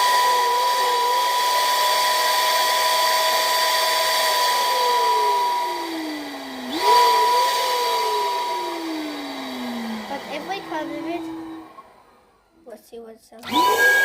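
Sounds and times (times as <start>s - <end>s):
shrill steam whistle: 0.0s - 5.9s, 6.7s - 9.1s
lower wavering whistle tone: 5.0s - 6.0s, 6.9s - 9.2s.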